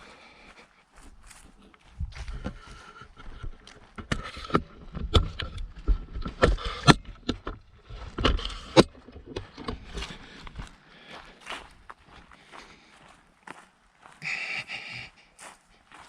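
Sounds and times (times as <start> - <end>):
footsteps walking: 0.0 - 16.0
sharp knocks and clicks: 3.3 - 10.1.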